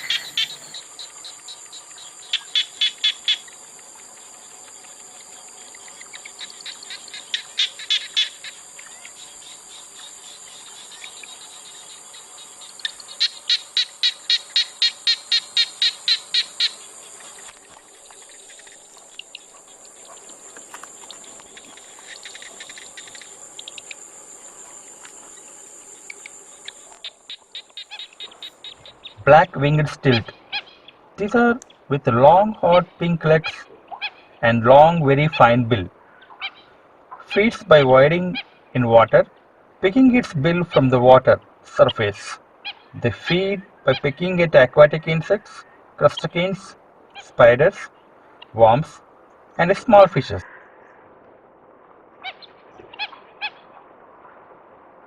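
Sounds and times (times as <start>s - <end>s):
high-pitched insect drone: 0.0s - 29.8s
sharp repeated bird calls: 0.0s - 34.5s, 52.2s - 54.4s.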